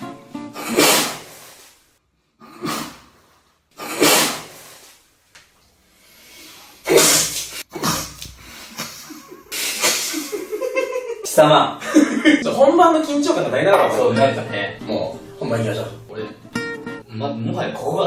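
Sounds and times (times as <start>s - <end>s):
man sneezing: 0.6s - 1.4s, 2.4s - 3.2s, 3.8s - 4.8s, 6.8s - 10.4s.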